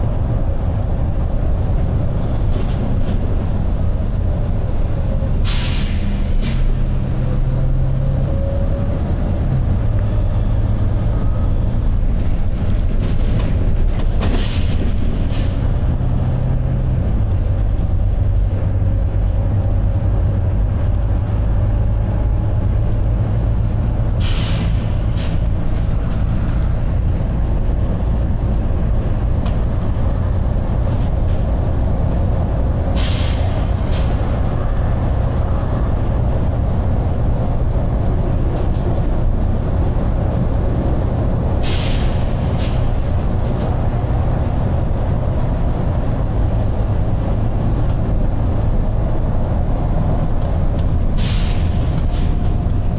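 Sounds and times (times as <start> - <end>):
bus diesel engine: 0.0 - 52.9
compressed air hisses: 41.6 - 42.8.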